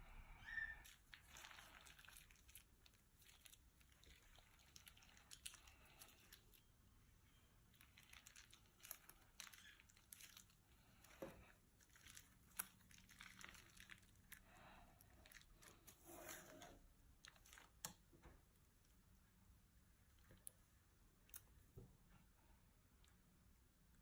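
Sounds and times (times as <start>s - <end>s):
plastic bag crinkling: 0.8s - 6.6s, 7.7s - 17.9s
slime stretching crackles: 0.8s - 6.7s, 7.7s - 18.1s.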